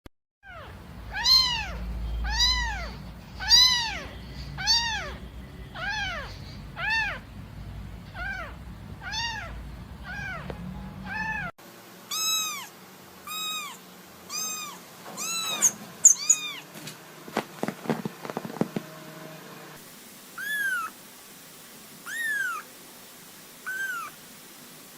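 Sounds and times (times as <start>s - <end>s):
kittens meowing: 0.4s - 7.4s, 8.0s - 11.5s, 12.1s - 12.7s, 13.3s - 16.6s, 20.4s - 20.9s, 22.1s - 22.7s, 23.6s - 24.2s.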